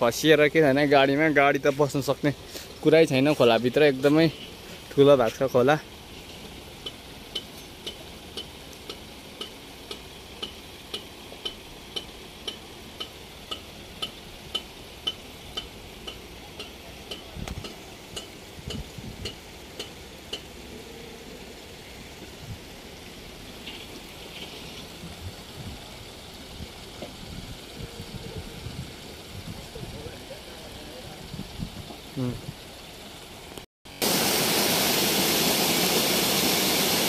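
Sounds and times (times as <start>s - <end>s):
steady hiss: 0.0s - 37.0s
ticking with high ring: 6.8s - 20.6s.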